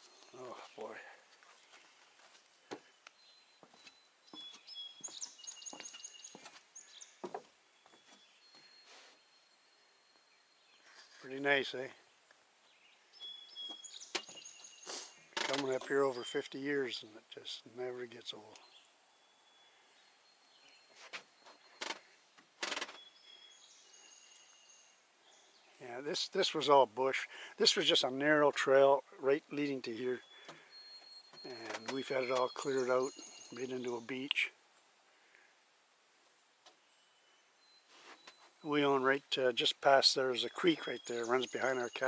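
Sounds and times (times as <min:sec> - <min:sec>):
songbirds singing high whistles: 0:03.1 - 0:07.2, 0:12.6 - 0:15.4
short scuffing noises: 0:03.6 - 0:08.2, 0:20.9 - 0:22.0, 0:37.9 - 0:38.6.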